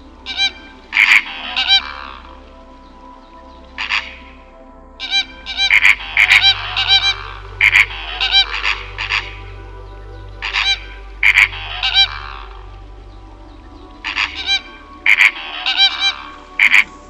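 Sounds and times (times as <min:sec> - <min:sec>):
steady low hum: 0:00.0 - 0:17.0
bird honking: 0:00.3 - 0:02.4, 0:05.1 - 0:12.6, 0:14.0 - 0:16.9.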